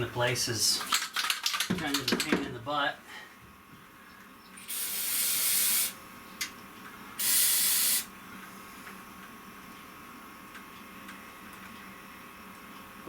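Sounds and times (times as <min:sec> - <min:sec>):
aerosol can spraying: 0:04.7 - 0:06.0, 0:07.2 - 0:08.1.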